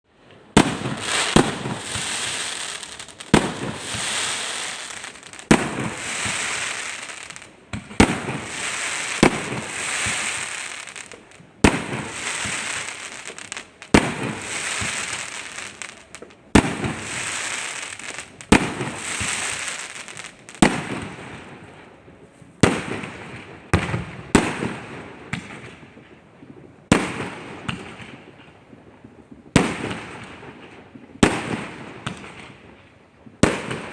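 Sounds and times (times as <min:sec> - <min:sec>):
fireworks bangs: 0:00.5 - 0:21.8
fireworks hissing tails: 0:00.6 - 0:21.4.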